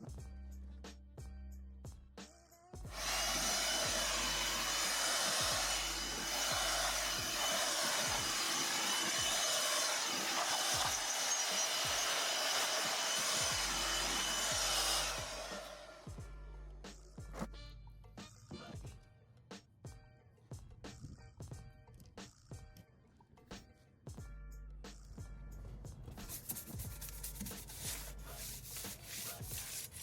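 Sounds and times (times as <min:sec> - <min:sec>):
background music with a beat: 0:00.0 - 0:10.0, 0:10.6 - 0:30.0
power tool running: 0:02.9 - 0:16.1.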